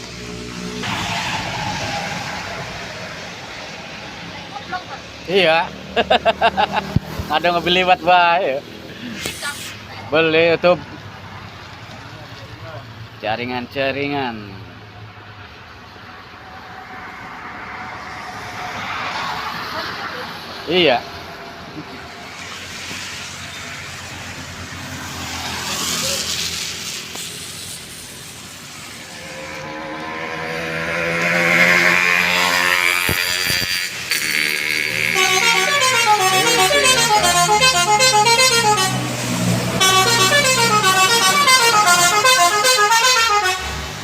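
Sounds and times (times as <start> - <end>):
bus engine approaching: 0.0 - 44.0
bus musical horn melody: 29.1 - 31.2, 33.5 - 44.0.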